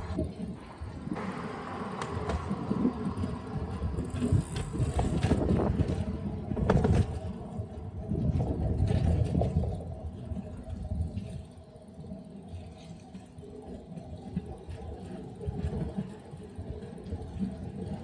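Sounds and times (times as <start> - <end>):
bicycle tyre road noise: 0.0 - 18.0
wind buffeting microphone: 0.0 - 18.0.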